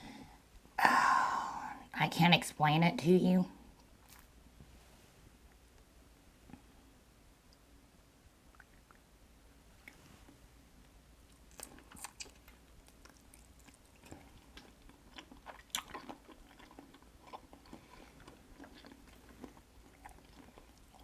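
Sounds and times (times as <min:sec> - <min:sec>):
chewing and wet mouth sounds: 0:08.5 - 0:09.1, 0:09.8 - 0:10.4, 0:11.2 - 0:21.0.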